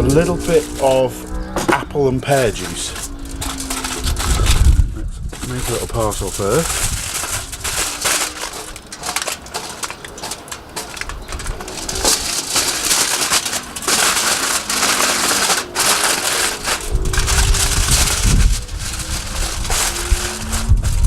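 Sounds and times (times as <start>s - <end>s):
wind rumble on microphone: 0.0s - 8.0s, 16.6s - 21.0s
aluminium foil crinkling: 0.0s - 21.0s.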